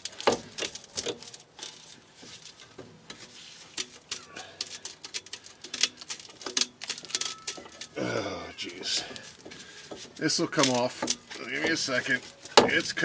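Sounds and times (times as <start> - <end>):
metal clamp clicking and scraping: 0.0 - 8.0, 8.6 - 13.0.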